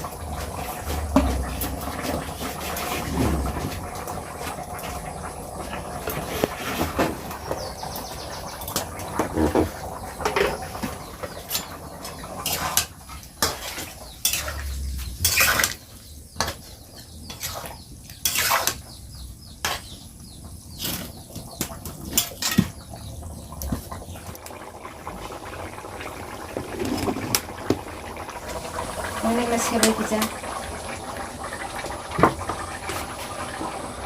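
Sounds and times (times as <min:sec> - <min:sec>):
metal pots and utensils clinking: 0:00.0 - 0:19.0, 0:19.6 - 0:20.0, 0:20.7 - 0:24.6.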